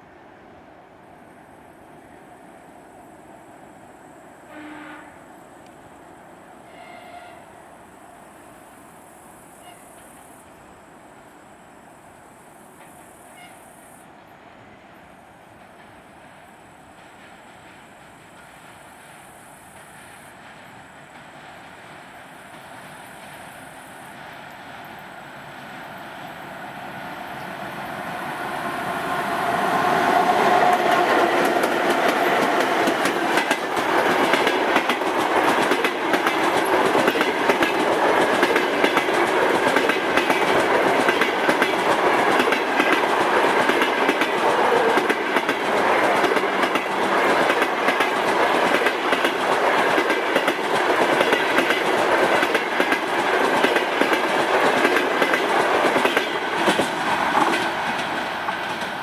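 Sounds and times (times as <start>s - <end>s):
train wheels clattering: 28.9s - 59.0s.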